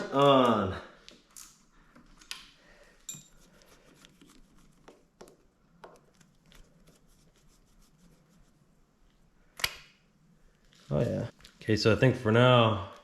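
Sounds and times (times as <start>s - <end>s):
clinks of tools and bike parts: 2.2s - 3.5s.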